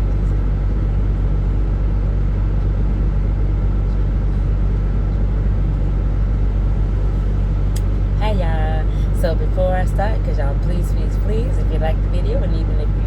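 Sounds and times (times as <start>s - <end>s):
car engine idling: 3.1s - 13.0s.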